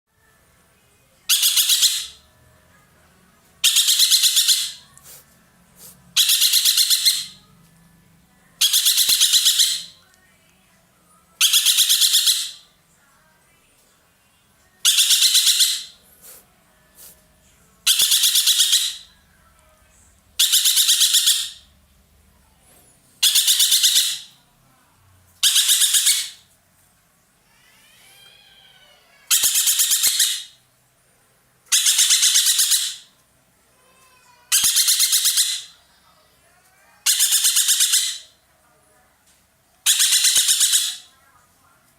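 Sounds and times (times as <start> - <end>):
bird harsh rattling call: 3.6 - 4.8, 6.2 - 7.3, 23.2 - 24.3, 25.4 - 26.4, 31.7 - 33.1, 39.9 - 41.1.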